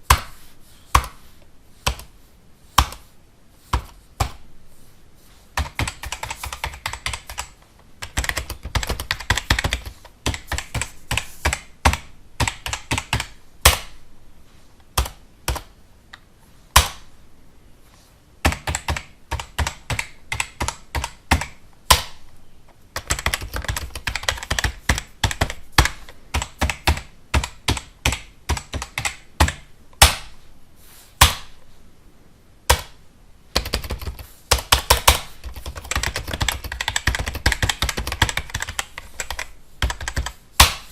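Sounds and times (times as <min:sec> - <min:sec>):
computer keyboard typing: 0:05.6 - 0:13.8, 0:15.0 - 0:15.7, 0:18.4 - 0:22.1, 0:23.0 - 0:29.7, 0:32.7 - 0:40.9.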